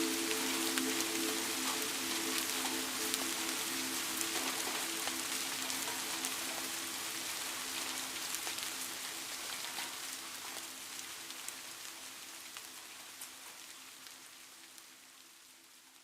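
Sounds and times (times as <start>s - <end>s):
raindrops ticking: 0.0s - 11.6s
steady rain: 0.0s - 16.0s.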